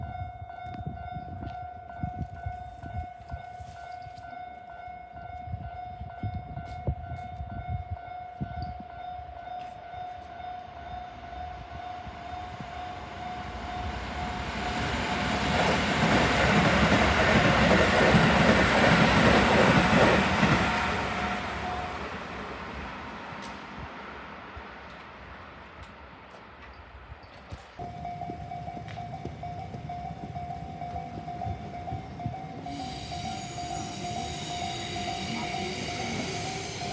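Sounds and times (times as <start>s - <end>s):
railroad crossing bell ringing: 0.0s - 22.7s, 26.8s - 36.9s
train rushing past: 10.0s - 26.8s, 27.8s - 36.9s.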